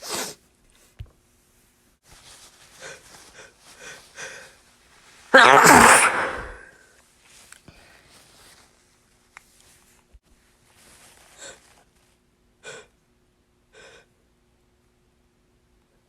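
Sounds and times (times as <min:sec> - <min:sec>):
person breathing and sniffing: 0:02.5 - 0:04.6
sharp in-breaths: 0:05.4 - 0:06.8.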